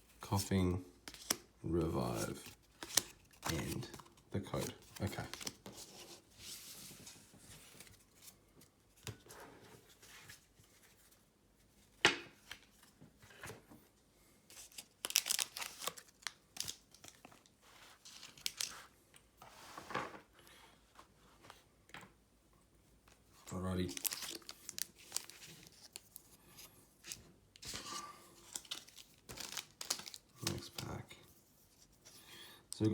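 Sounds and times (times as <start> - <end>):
foil wrapper crinkling: 14.5 - 18.8, 23.5 - 26.2, 27.6 - 31.0.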